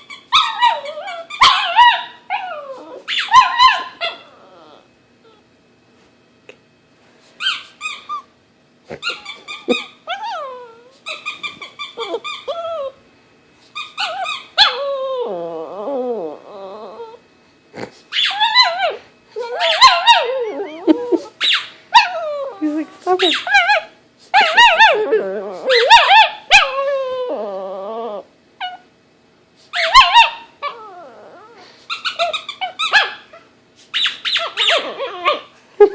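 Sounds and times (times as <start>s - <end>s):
dog whining: 0.0s - 5.5s, 7.4s - 8.3s, 8.9s - 13.0s, 13.7s - 28.9s, 29.7s - 35.9s
rubber squeaky toy squeaking: 7.4s - 8.2s, 9.0s - 10.0s, 11.1s - 12.8s, 18.1s - 20.7s, 23.1s - 23.8s, 31.9s - 33.0s, 33.9s - 35.4s.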